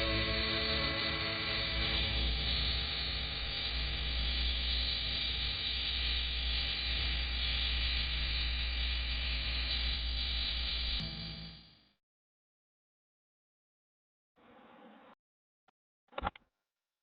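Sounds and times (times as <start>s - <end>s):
static hiss: 0.0s - 11.7s.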